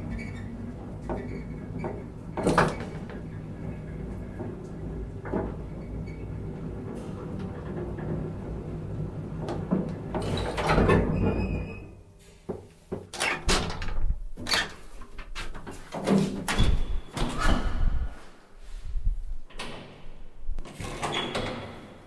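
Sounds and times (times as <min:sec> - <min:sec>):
elevator car rumble: 0:00.0 - 0:11.9
elevator doors clunking and rattling: 0:00.0 - 0:12.0, 0:13.0 - 0:18.2.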